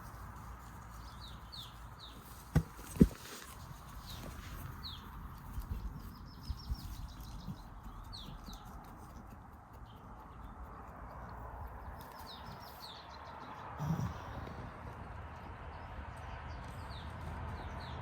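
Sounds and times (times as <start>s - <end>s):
small birds chirping: 0.0s - 3.1s, 3.7s - 18.0s
low grunt: 13.8s - 14.5s.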